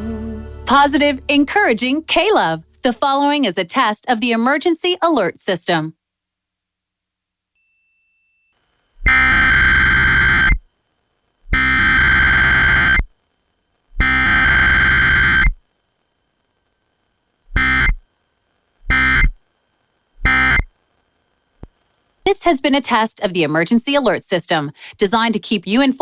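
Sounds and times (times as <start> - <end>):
digital data burst screech: 9.0 - 10.6, 11.5 - 13.1, 14.0 - 15.6, 17.6 - 18.0, 18.9 - 19.4, 20.2 - 20.7.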